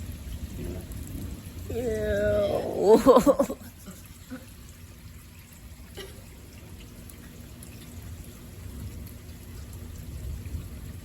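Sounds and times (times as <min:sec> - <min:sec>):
low thunder rumble: 0:00.0 - 0:03.6, 0:08.6 - 0:11.0
rain falling and dripping: 0:00.0 - 0:11.0.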